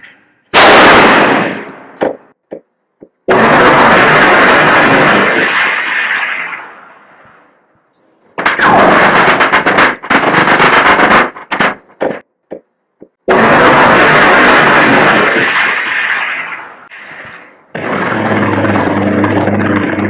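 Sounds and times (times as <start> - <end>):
mouth-imitated blast: 0.5 - 1.8
imitated single gunshots: 0.5 - 2.2, 3.2 - 6.9, 8.4 - 12.2, 13.2 - 16.6
imitated machine-gun fire: 0.6 - 1.7, 3.2 - 6.6, 8.4 - 12.2, 13.3 - 16.4, 17.7 - 20.0.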